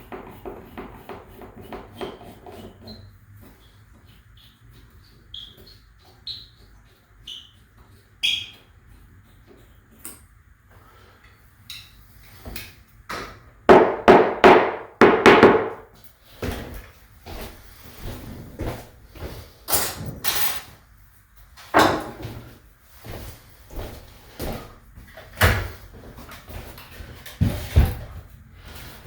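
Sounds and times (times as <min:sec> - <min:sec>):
short squeaks: 0:02.4 - 0:08.8.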